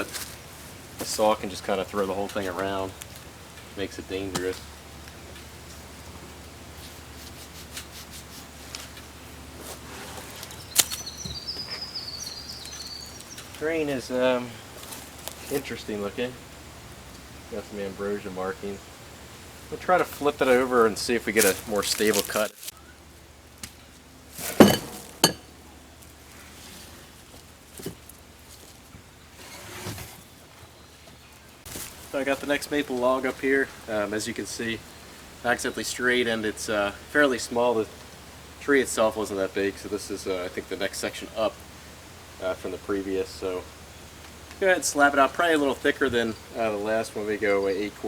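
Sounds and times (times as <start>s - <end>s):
bird singing warbling song: 10.3s - 16.7s, 30.2s - 37.0s, 43.2s - 48.0s
metal clanks: 24.4s - 25.5s.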